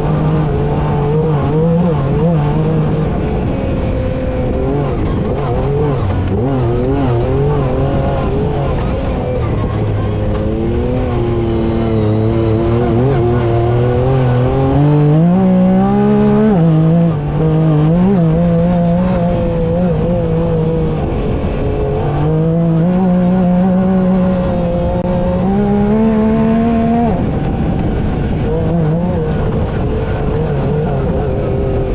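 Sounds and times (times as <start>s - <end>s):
engine revving on the move: 0.0s - 31.9s.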